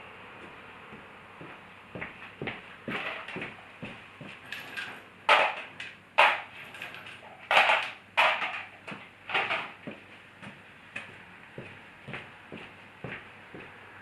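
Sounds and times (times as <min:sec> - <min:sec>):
sharp knocks and clatters: 0:02.0 - 0:11.7.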